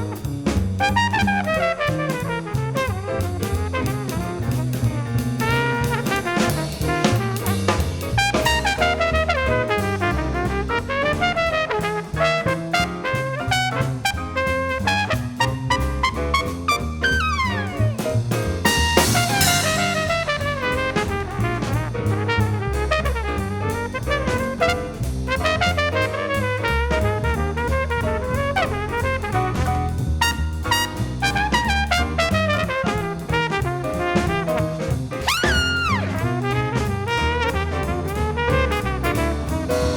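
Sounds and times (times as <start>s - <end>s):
upbeat jazz with brass and drums: 0.0s - 39.9s.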